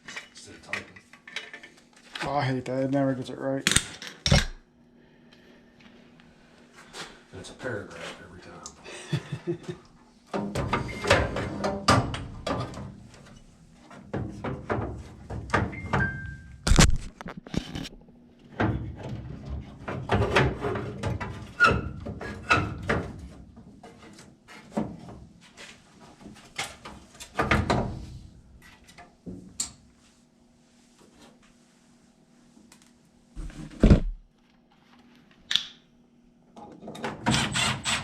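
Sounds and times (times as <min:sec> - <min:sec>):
tools and metal parts clunking: 0:00.0 - 0:01.8
faint steady hum: 0:00.0 - 0:19.6.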